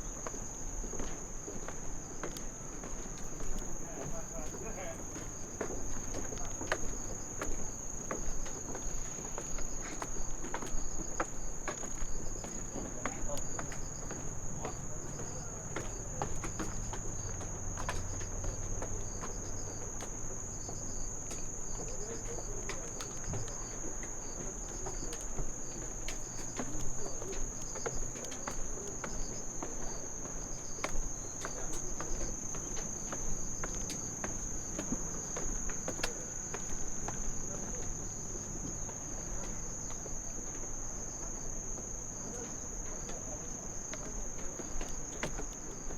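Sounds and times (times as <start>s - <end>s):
footsteps on a path: 0.0s - 45.9s
insects trilling: 0.0s - 45.9s.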